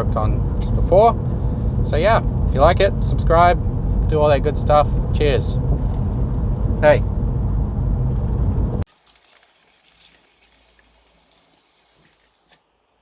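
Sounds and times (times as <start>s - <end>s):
loud low rumbling: 0.0s - 8.9s
faint hiss: 8.9s - 13.0s.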